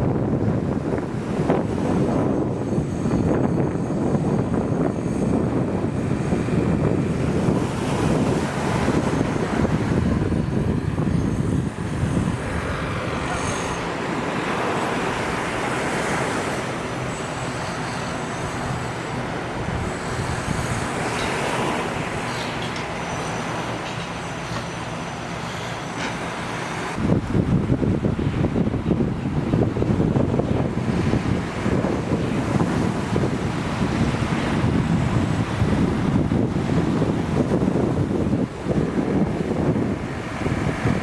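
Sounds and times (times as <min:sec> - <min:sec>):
wind buffeting microphone: 0:00.0 - 0:41.0
surf washing onto beach: 0:05.7 - 0:24.4, 0:25.2 - 0:41.0.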